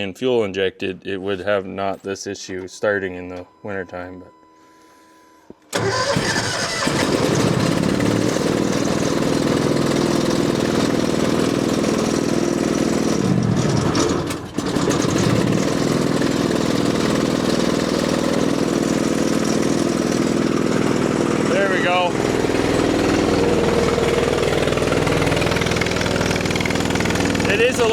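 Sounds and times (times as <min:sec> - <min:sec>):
engine cranking: 0:05.7 - 0:27.9
gasoline engine running: 0:05.7 - 0:27.9.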